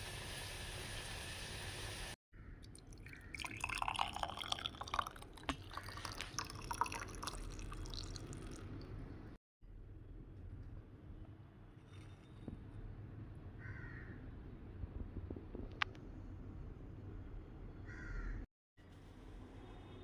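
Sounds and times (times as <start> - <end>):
water pouring into a vessel: 2.6 - 9.0.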